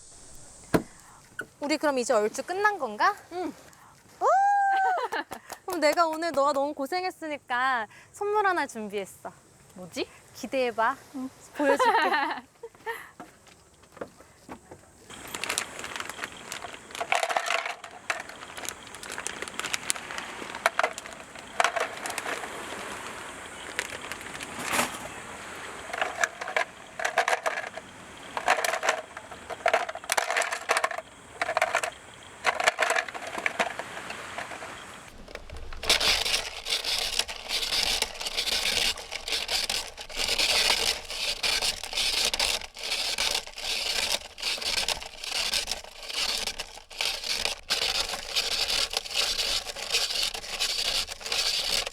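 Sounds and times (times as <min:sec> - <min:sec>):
ice crushing: 0:15.1 - 0:25.2, 0:28.4 - 0:51.9.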